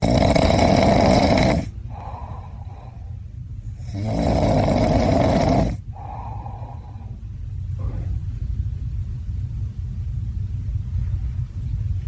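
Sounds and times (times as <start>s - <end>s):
person snoring loudly: 0.0s - 2.1s, 3.8s - 5.8s.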